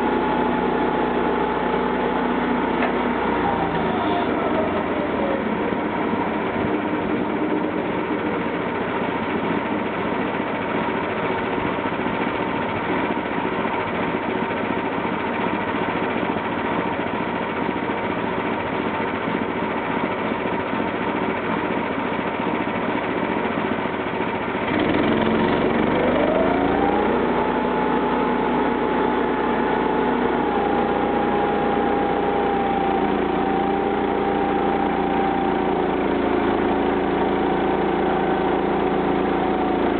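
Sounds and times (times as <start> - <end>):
rising whine: 0.0 - 8.5, 25.9 - 39.9
gasoline engine running: 0.0 - 39.9.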